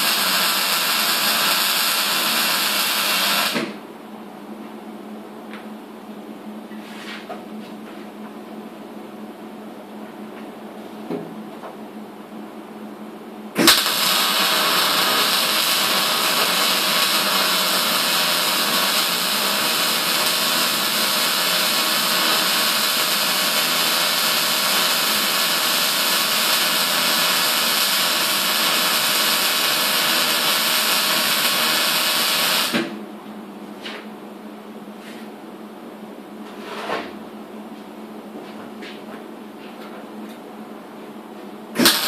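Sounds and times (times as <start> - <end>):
welding arc crack: 0.0 - 3.8, 13.6 - 32.8, 41.8 - 42.0
welding arc hissing: 0.0 - 3.8, 13.6 - 32.8, 41.8 - 42.0.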